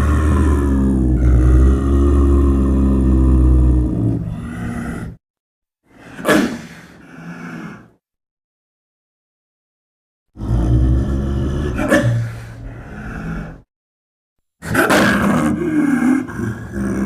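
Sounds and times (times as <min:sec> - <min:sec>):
big cat growl-roar: 0:00.0 - 0:05.2, 0:10.3 - 0:13.7, 0:14.6 - 0:17.0.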